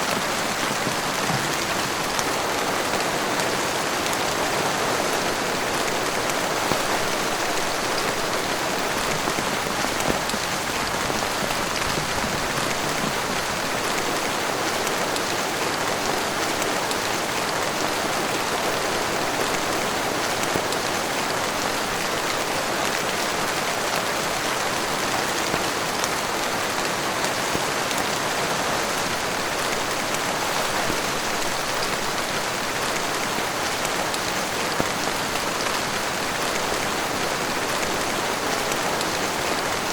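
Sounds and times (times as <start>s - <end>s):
heavy rain: 0.0s - 39.9s
individual raindrops: 0.0s - 39.9s.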